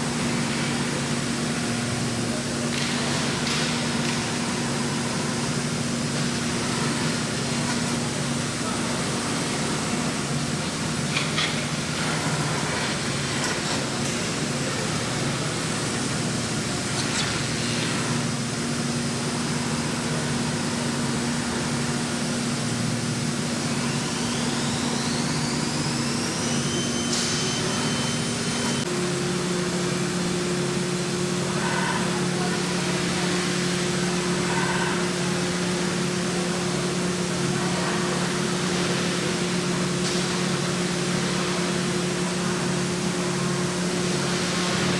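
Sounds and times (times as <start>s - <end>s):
router machine humming: 0.0s - 31.5s
spindle whine: 0.0s - 44.9s.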